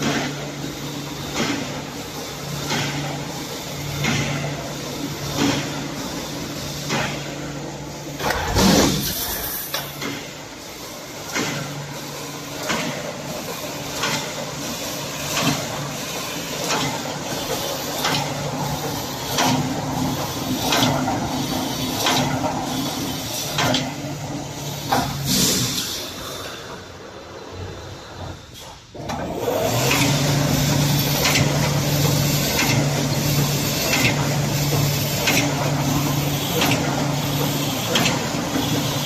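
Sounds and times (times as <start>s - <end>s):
welding machine clacking: 15.2s - 25.7s, 29.1s - 39.0s.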